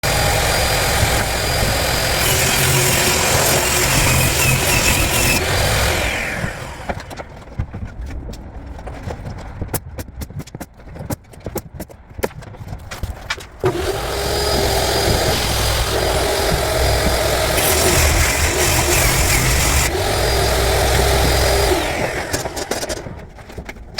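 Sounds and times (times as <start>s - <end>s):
power tool whining: 0.0s - 7.3s, 13.6s - 23.3s.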